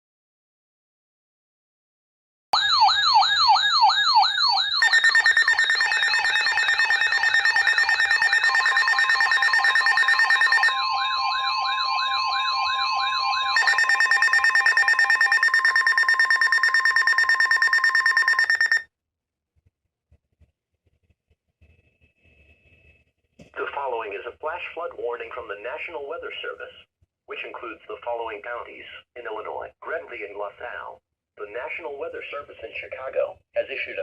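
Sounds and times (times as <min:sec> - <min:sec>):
siren warble: 0:02.6 - 0:18.8
beeping alert tones: 0:04.8 - 0:10.7, 0:13.6 - 0:18.8.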